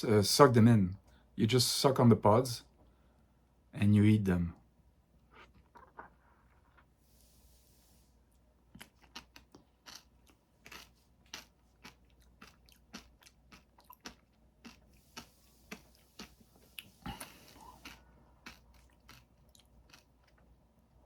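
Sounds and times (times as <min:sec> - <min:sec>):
chewing crunchy seeds: 0:08.4 - 0:21.0.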